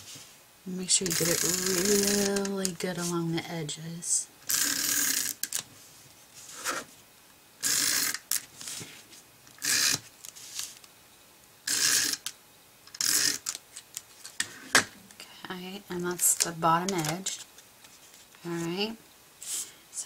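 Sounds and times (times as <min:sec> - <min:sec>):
tape runner clicking and rasping: 0:01.0 - 0:02.8.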